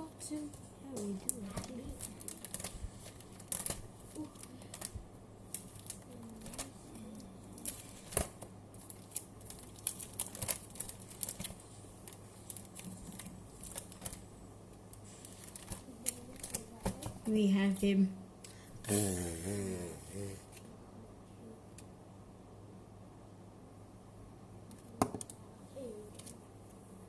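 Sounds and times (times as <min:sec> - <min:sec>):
cards clicking and rustling: 0:00.9 - 0:06.8, 0:07.6 - 0:14.2, 0:15.2 - 0:17.2.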